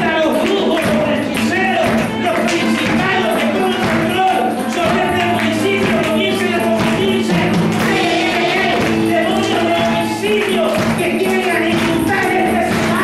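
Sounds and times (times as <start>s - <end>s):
band with steady beat: 0.0s - 13.0s
tambourine shaking: 0.0s - 13.0s
voices singing: 0.0s - 13.0s.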